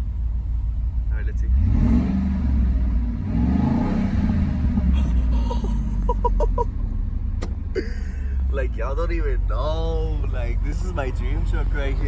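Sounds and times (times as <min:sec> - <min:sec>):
engine revving: 0:01.4 - 0:06.3.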